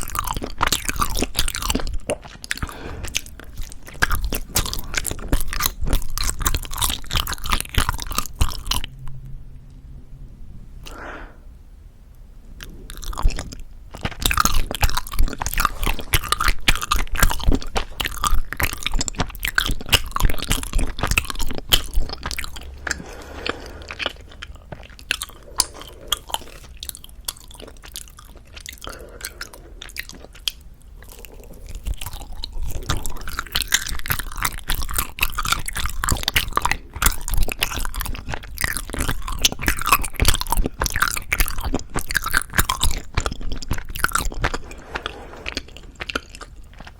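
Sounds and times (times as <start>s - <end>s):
chewing sticky rice cake: 0.0s - 9.1s, 12.6s - 46.9s.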